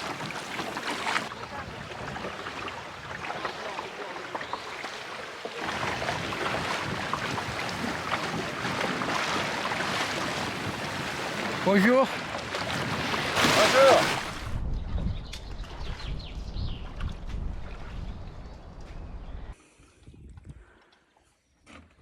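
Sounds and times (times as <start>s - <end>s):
water splashing along a hull: 0.0s - 14.6s
wind noise: 5.6s - 11.6s, 12.5s - 20.8s.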